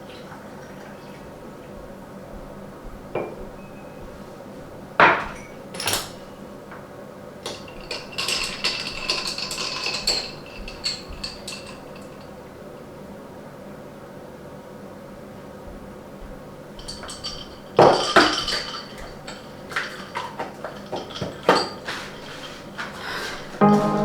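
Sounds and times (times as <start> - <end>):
ceramic cups knocking: 2.3 - 4.3, 5.0 - 6.2, 7.4 - 12.3, 16.2 - 24.0
spoon stirring in a mug: 7.4 - 12.4, 16.8 - 23.9.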